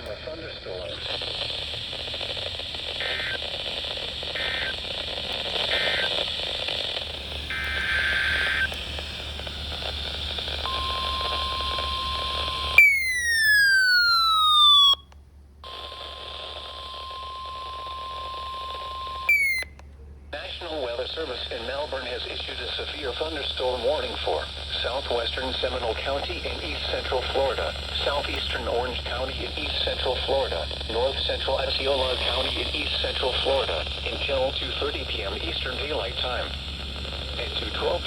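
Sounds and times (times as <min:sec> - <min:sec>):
electronic data bursts: 0:00.0 - 0:15.0, 0:15.7 - 0:19.7
radio static hiss: 0:00.0 - 0:15.0, 0:15.6 - 0:38.0
steady alarm tone: 0:07.1 - 0:15.0, 0:15.6 - 0:19.7.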